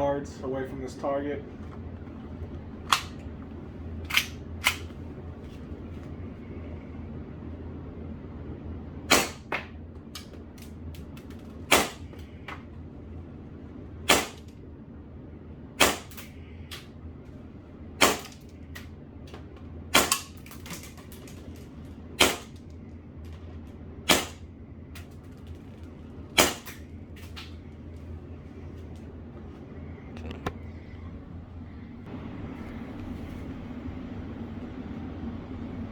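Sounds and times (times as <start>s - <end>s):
airsoft pistol shots: 9.1s - 9.6s, 11.7s - 12.0s, 14.1s - 14.5s, 15.8s - 16.3s, 18.0s - 18.3s, 19.9s - 20.3s, 22.2s - 22.5s, 24.1s - 24.4s, 26.4s - 26.8s.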